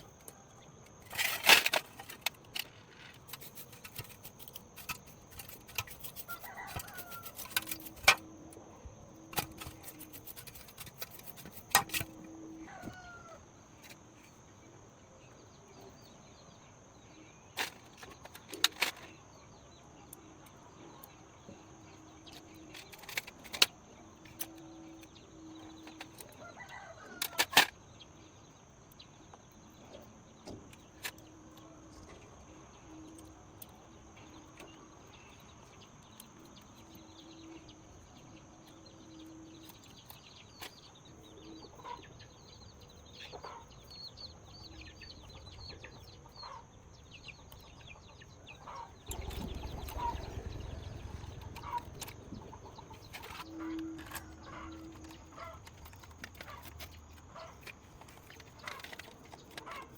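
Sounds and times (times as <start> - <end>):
high insect-like whine: 1.0 - 13.4, 48.8 - 56.0
faint bird calls: 48.0 - 59.9.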